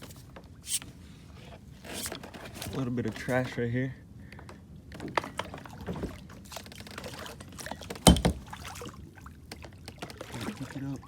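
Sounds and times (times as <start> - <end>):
water sloshing and splashing: 4.9 - 11.0
small knocks: 8.0 - 8.5
loud hollow thump: 8.1 - 8.5.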